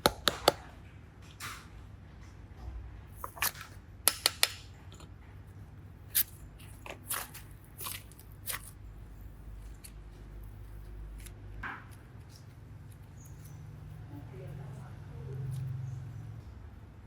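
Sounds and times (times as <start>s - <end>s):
low steady hum: 2.2s - 17.0s
sharp sticky clicks: 3.3s - 4.7s
hands squishing slime: 6.1s - 13.5s.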